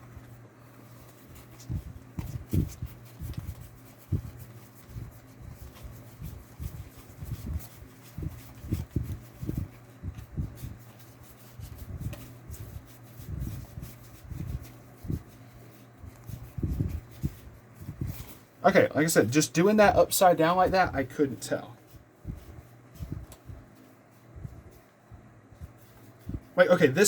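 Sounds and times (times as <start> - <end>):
steady low hum: 0.0 - 27.0
cards tapping and rubbing: 0.2 - 18.5, 21.8 - 25.0.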